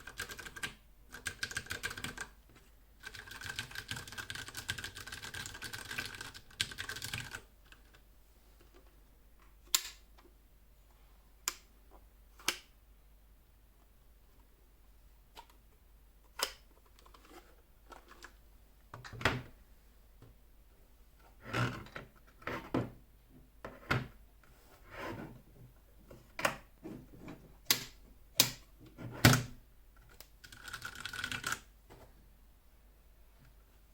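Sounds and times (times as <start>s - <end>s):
mechanical keyboard keys clacking: 0.0s - 2.3s, 3.0s - 7.4s.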